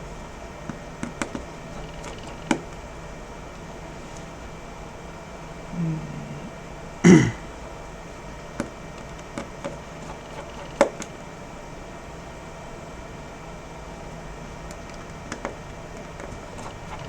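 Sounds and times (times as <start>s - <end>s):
person clearing throat: 5.8s - 7.5s.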